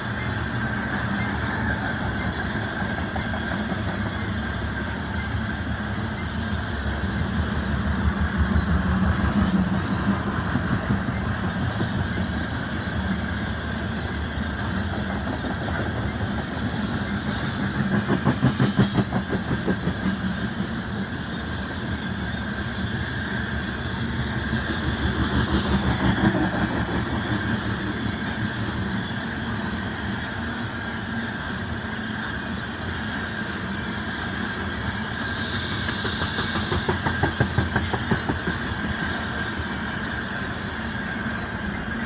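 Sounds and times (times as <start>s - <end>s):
train cars rumbling: 0.0s - 42.0s
wheels clacking over rail joints: 34.4s - 41.9s.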